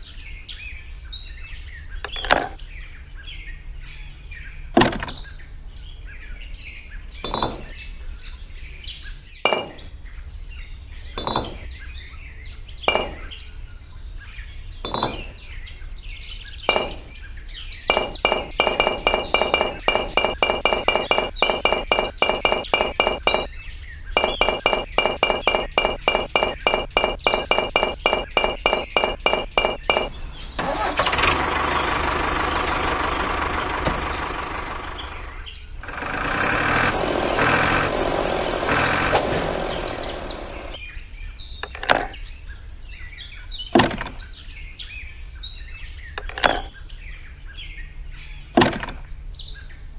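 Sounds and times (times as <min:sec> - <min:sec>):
fast even tapping: 0:09.5 - 0:09.9, 0:12.9 - 0:13.4, 0:14.9 - 0:15.4, 0:16.7 - 0:17.2, 0:17.9 - 0:23.5, 0:24.2 - 0:30.8
sharp clicks: 0:09.5 - 0:09.9, 0:12.9 - 0:13.4, 0:16.7 - 0:17.2, 0:17.9 - 0:23.5, 0:24.2 - 0:31.0
high ringing tone: 0:12.9 - 0:13.3, 0:16.7 - 0:17.1, 0:17.9 - 0:23.5, 0:24.2 - 0:30.4.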